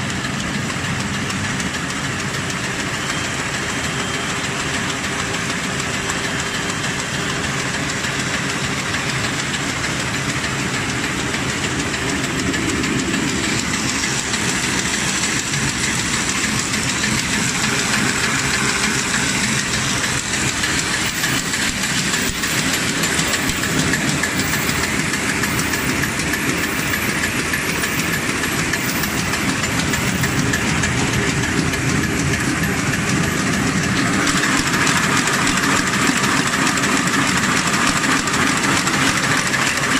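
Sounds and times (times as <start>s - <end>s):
paper bag machine clattering: 10.9s - 39.9s.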